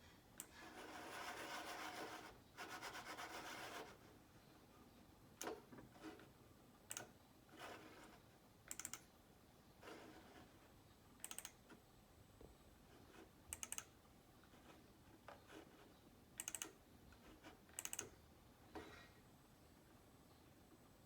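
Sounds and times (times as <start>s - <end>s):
computer keyboard typing: 8.7s - 9.1s, 11.2s - 11.7s, 13.5s - 13.9s, 16.4s - 16.8s, 17.8s - 18.1s.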